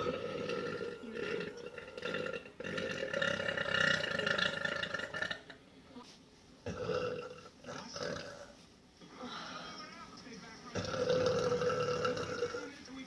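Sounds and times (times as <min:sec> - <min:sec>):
woman belching: 0:00.0 - 0:05.6, 0:06.7 - 0:08.5, 0:10.8 - 0:12.6.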